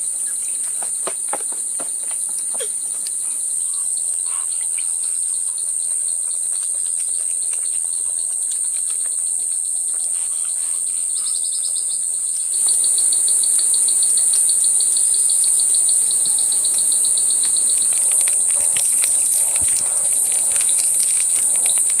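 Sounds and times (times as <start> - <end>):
insects buzzing drone: 0.0 - 22.0
rapid pulsed chirping: 12.5 - 22.0.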